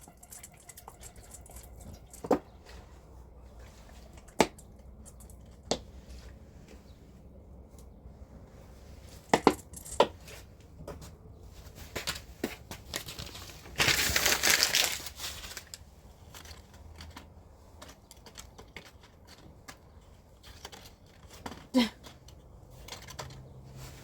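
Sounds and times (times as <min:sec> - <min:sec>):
crunching rustle of kindling: 0:11.5 - 0:24.0
dry kindling snapping: 0:11.9 - 0:23.7.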